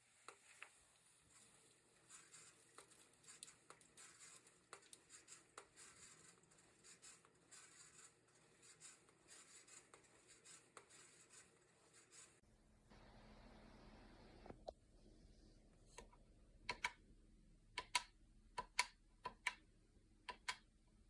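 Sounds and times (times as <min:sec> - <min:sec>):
faint scratchy rustling: 0:00.0 - 0:12.4.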